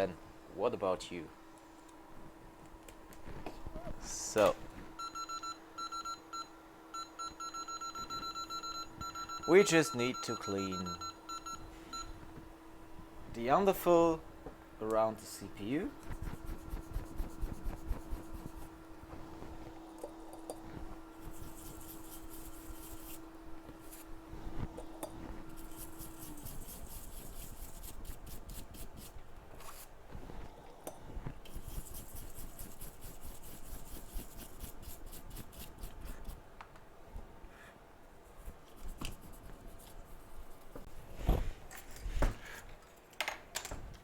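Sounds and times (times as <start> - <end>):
low steady hum: 0.0 - 44.0.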